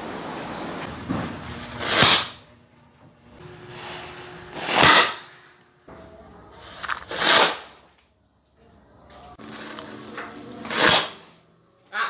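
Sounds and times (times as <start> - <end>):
paper cannon firing: 1.3 - 2.4, 4.5 - 5.4, 6.8 - 7.8, 10.6 - 11.4.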